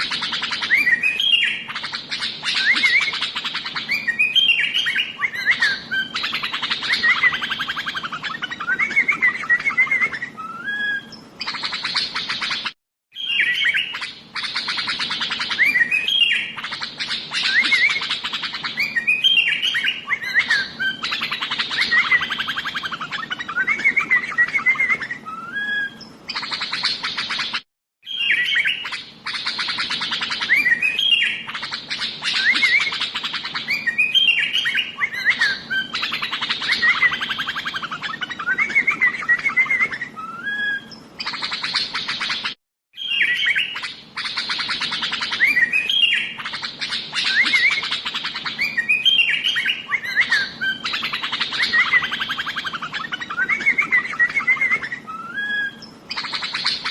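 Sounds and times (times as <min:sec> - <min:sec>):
bird chattering and whistling: 0:00.0 - 0:56.9.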